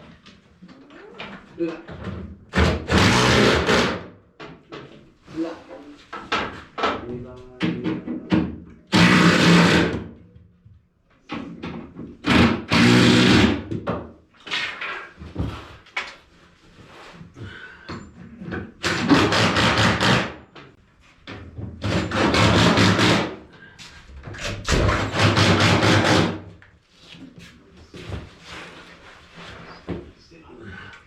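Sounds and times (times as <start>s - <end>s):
power drill driving bolts: 12.3s - 13.6s.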